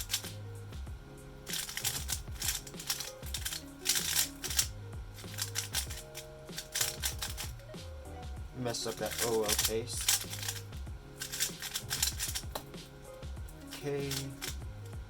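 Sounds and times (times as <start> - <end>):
background music with steady beat: 0.0 - 15.0.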